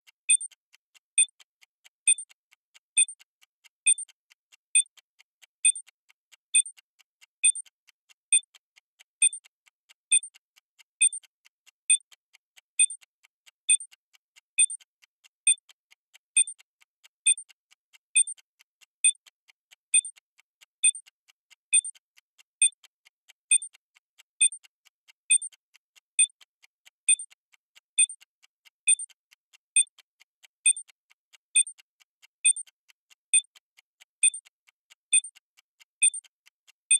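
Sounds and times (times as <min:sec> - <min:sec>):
countdown timer ticking: 0:00.3 - 0:00.5, 0:06.6 - 0:06.8, 0:28.9 - 0:29.1, 0:31.6 - 0:31.8, 0:34.2 - 0:34.5, 0:36.0 - 0:36.3.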